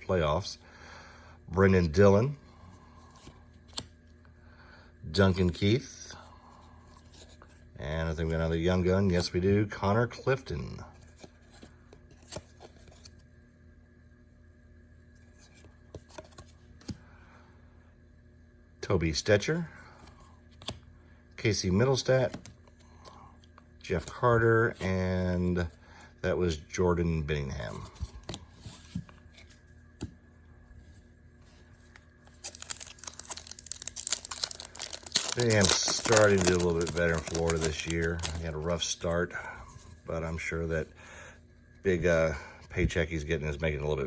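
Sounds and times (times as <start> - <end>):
room hum: 0.0 - 44.0
trading cards clicking and rubbing: 32.2 - 39.2
foil wrapper crinkling and tearing: 32.3 - 39.2.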